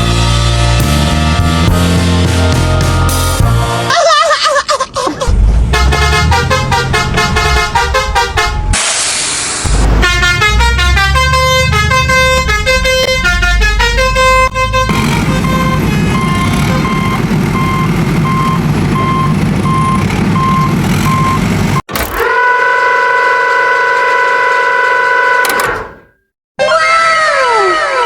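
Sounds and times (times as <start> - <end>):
horn blast: 5.6 - 8.9, 9.6 - 17.0, 22.1 - 25.9
low engine rumble: 9.7 - 21.8.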